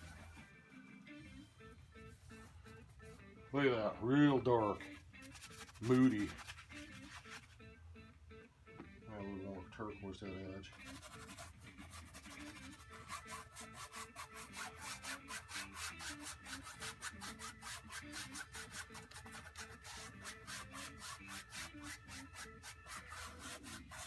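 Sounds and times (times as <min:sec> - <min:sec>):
paintbrush scrubbing canvas: 0:00.0 - 0:00.5, 0:02.1 - 0:03.3, 0:04.8 - 0:07.6, 0:10.7 - 0:24.0
soft background music: 0:00.0 - 0:24.0.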